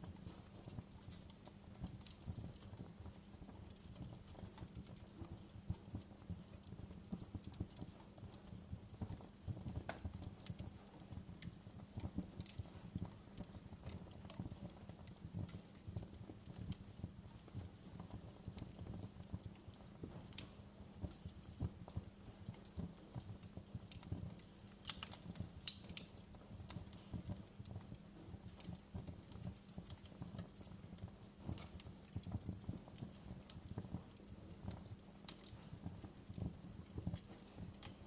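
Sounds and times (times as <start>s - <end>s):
wood fire crackling: 0.0s - 38.0s.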